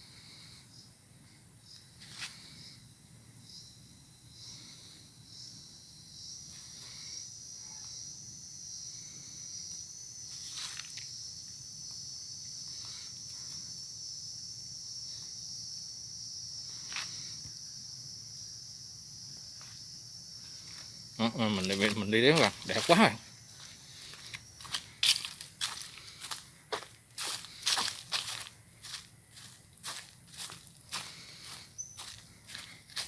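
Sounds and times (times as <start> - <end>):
insects droning: 0.0 - 33.0
footsteps clicking: 21.6 - 23.2, 24.1 - 33.0.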